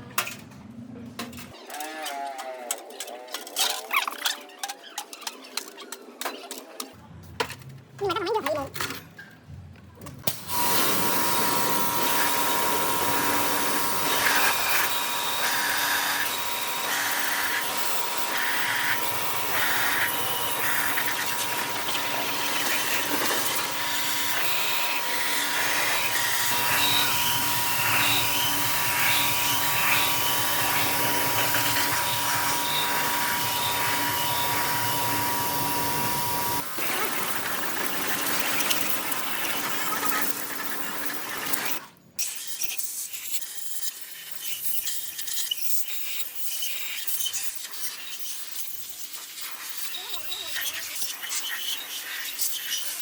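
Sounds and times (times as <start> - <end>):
power tool motor whining: 10.3 - 41.8
tool grinding against metal part: 10.5 - 53.0.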